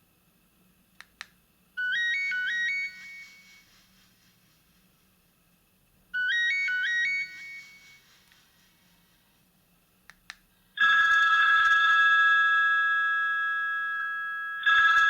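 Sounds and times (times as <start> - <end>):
ringtone of rising high notes: 1.8 - 3.7, 6.2 - 8.1.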